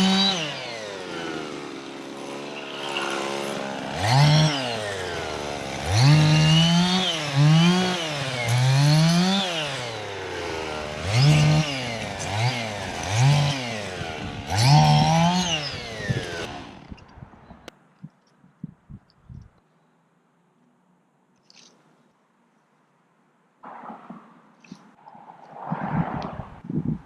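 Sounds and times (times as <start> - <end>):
chainsaw revving and cutting wood: 0.0 - 17.1.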